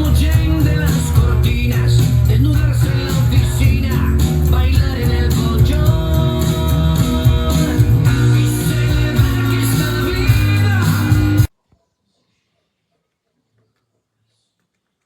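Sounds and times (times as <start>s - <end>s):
rock music with singing: 0.0s - 11.5s.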